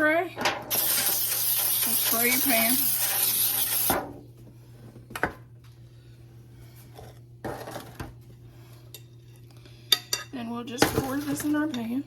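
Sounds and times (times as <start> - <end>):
aerosol spray hissing: 0.7 - 3.9.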